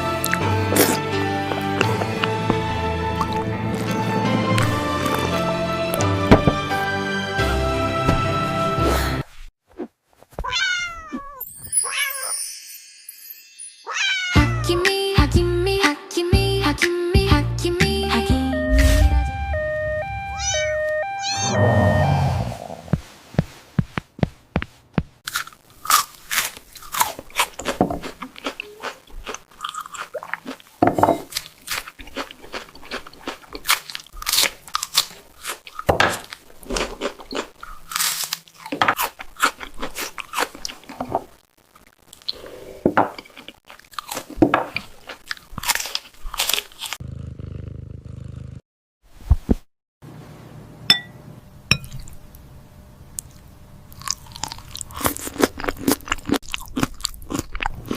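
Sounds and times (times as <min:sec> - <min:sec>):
low hum: 0:18.4 - 0:23.0
cat crunching dry food: 0:53.9 - 0:57.9.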